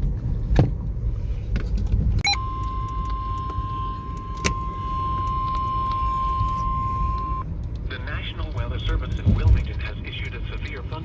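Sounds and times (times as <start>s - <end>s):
low steady rumble: 0.0s - 11.0s
steady warning alarm tone: 2.2s - 7.4s.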